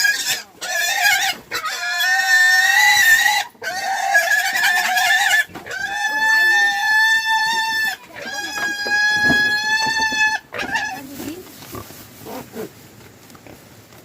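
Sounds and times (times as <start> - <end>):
pig squealing: 0.0 - 11.1.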